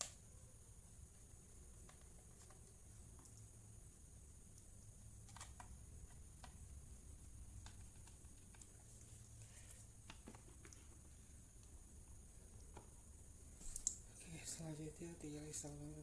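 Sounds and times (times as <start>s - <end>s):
steady low hum: 0.0s - 16.0s
faint clicks and taps: 1.6s - 3.5s, 4.5s - 6.8s, 7.5s - 11.8s, 12.5s - 13.0s, 13.6s - 14.1s.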